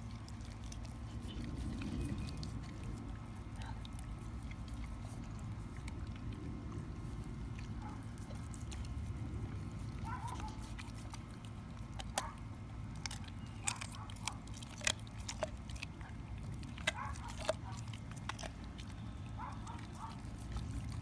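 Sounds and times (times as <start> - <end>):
dog chewing bone: 0.0 - 21.0
low background rumble: 0.0 - 21.0.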